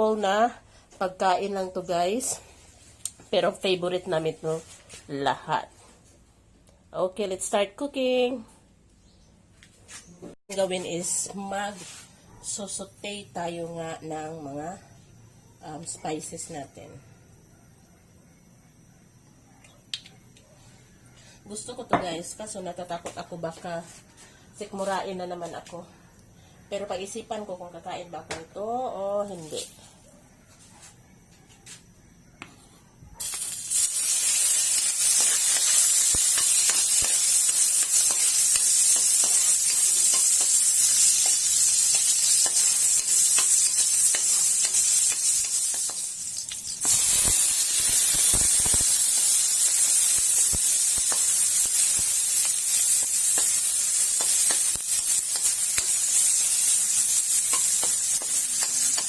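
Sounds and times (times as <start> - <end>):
food sizzling in oil: 33.2 - 59.0.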